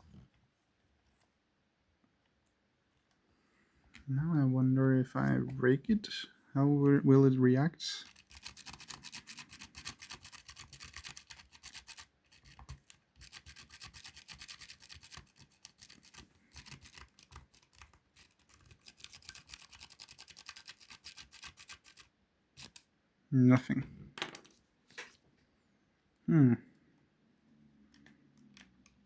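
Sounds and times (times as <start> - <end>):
lock pick rattling scratch: 8.0 - 22.8.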